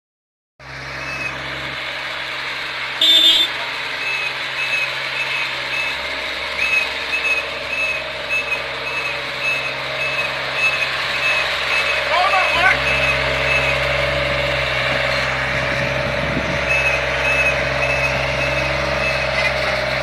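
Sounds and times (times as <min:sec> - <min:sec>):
road roller engine running: 0:00.6 - 0:20.0
loud high-pitched blast: 0:03.0 - 0:03.6
reversing alarm beeping: 0:03.0 - 0:06.0, 0:06.6 - 0:13.9, 0:16.6 - 0:19.4.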